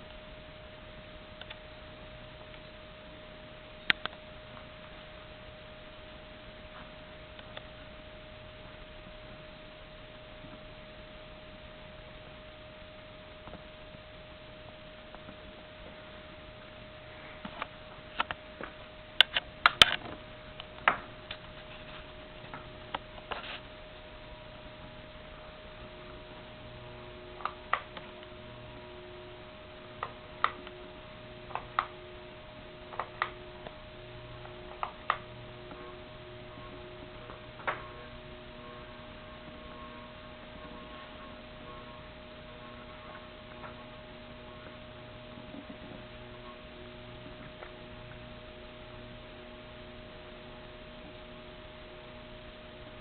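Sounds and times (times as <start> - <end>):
ceiling fan motor hum: 0.0 - 53.0
light ticking clicks: 3.8 - 5.1.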